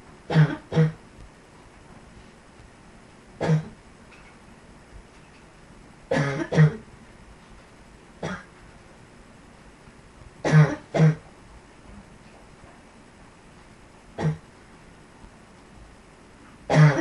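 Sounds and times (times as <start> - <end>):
person coughing: 0.3 - 1.0, 3.4 - 3.8, 6.1 - 6.8, 8.2 - 8.5, 10.4 - 11.2, 14.2 - 14.4, 16.7 - 17.0.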